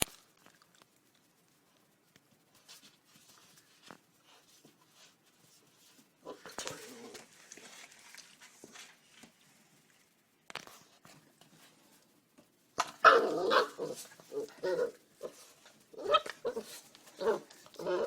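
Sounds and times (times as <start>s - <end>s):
puppy scrabbling and scraping: 2.5s - 9.4s, 12.8s - 18.0s.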